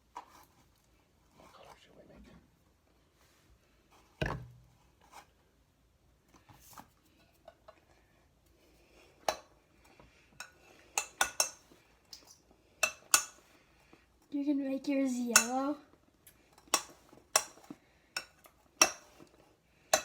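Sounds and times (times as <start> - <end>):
utensils clinking against bowls: 15.3 - 15.7.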